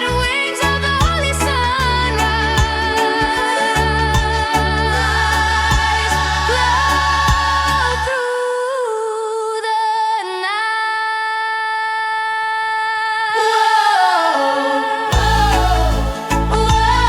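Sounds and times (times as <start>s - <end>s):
reggae gospel song: 0.0s - 8.7s, 13.4s - 17.0s
singer holding a long note: 0.0s - 9.4s, 12.5s - 17.0s.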